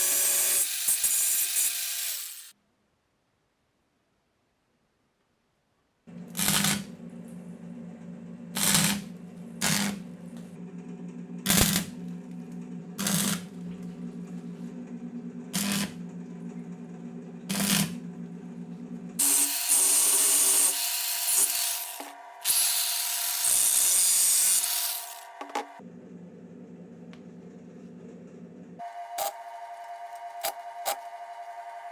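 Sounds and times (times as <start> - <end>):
power tool harsh bursts: 0.0 - 2.5, 6.3 - 6.9
power tool humming: 0.0 - 2.5, 6.1 - 7.0, 8.5 - 25.8.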